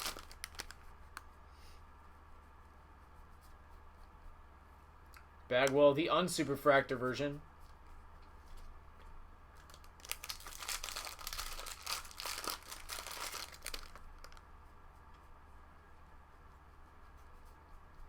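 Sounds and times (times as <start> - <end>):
packaging crinkling and rustling: 0.0 - 0.9, 9.6 - 14.4.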